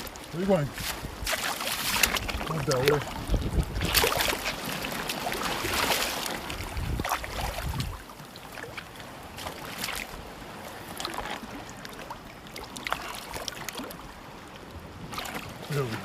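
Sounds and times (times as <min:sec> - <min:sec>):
wind on microphone: 0:00.0 - 0:08.1
small water splashes: 0:00.0 - 0:16.0
water sloshing around rocks: 0:00.0 - 0:16.0.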